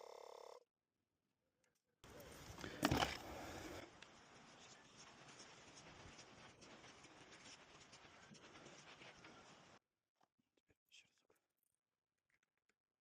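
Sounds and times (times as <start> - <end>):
hands scratching on tyre: 4.1 - 9.8.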